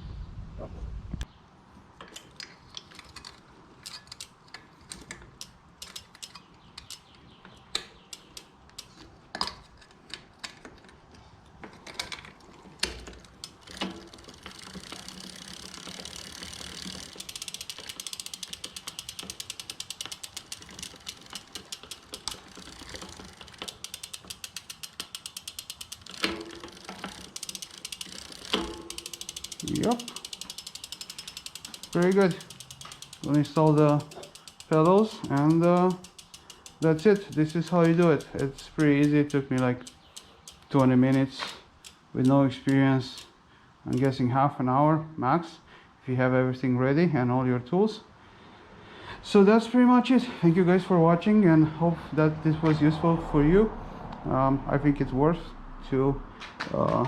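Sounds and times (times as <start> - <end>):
clicks and knocks of bike handling: 1.9 - 43.3
bicycle freewheel ticking: 5.3 - 7.1, 7.9 - 9.0, 13.1 - 43.3, 43.9 - 44.2.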